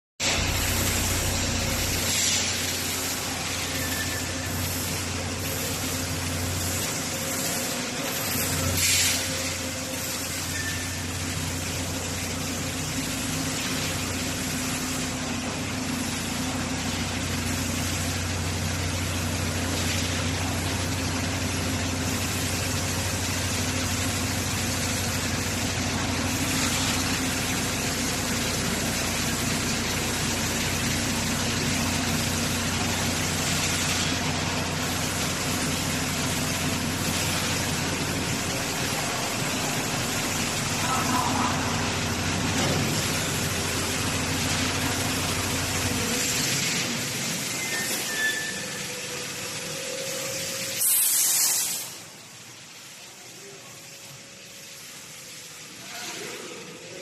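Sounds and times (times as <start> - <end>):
brief hisses: 0.2 - 11.1, 46.0 - 52.2
vehicle engine idling: 0.2 - 47.6.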